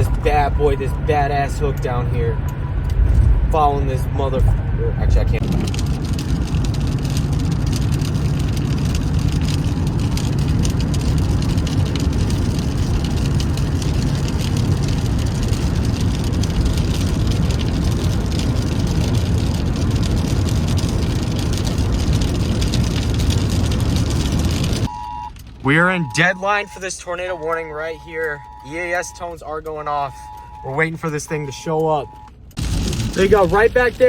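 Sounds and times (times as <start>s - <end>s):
car road and engine rumble: 0.0s - 34.0s.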